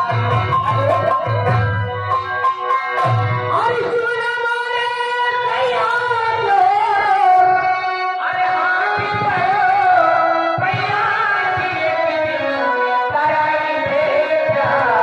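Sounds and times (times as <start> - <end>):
rhythmic instrumental backing: 0.0 - 15.0
person singing: 3.4 - 15.0.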